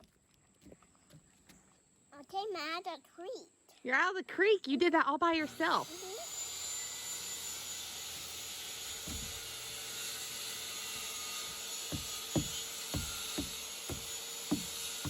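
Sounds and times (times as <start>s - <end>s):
high-pitched outdoor hiss: 1.0s - 15.0s
soft low thuds: 11.9s - 14.7s.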